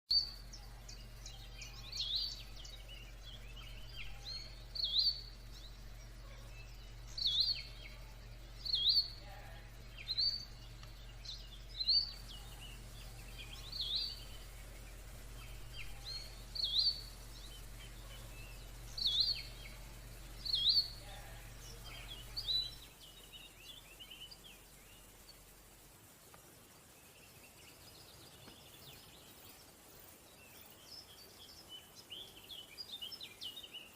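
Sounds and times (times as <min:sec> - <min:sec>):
fainter bird chirps: 0:00.1 - 0:25.4
low steady hum: 0:00.1 - 0:33.9.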